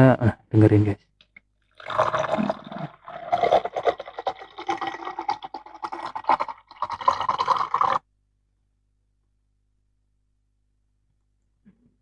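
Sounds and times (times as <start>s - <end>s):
liquid pouring into container: 1.8s - 8.0s.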